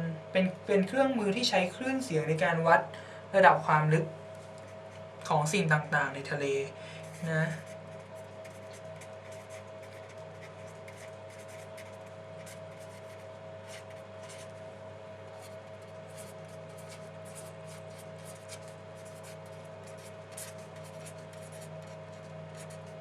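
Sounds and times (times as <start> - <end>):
steady electrical hum: 0.0 - 23.0
pen scratching on paper: 7.1 - 14.6, 15.3 - 23.0.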